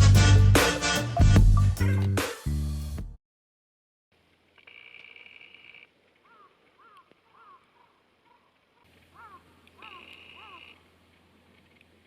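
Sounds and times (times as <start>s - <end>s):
bird calling with trills and chirps: 6.2s - 8.5s, 9.1s - 10.8s.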